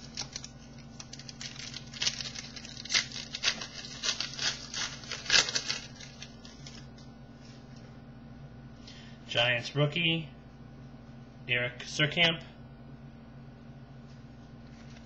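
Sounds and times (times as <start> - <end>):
cards and packaging crinkling: 0.0 - 7.1.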